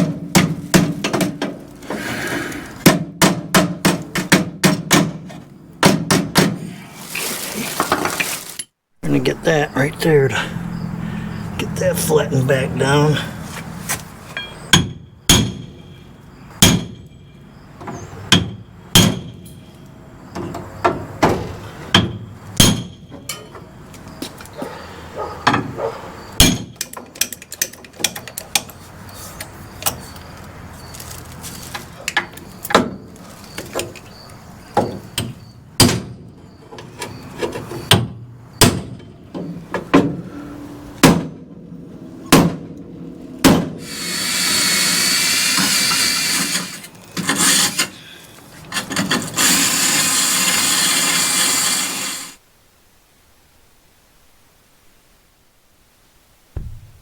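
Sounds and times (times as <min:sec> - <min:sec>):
hammer striking steel: 0:14.4 - 0:15.8.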